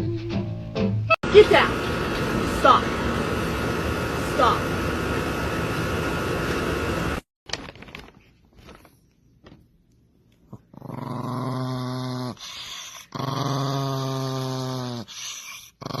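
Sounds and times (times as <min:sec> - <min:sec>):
loud steady noise: 0:01.2 - 0:07.3
dog growling low: 0:10.5 - 0:16.0.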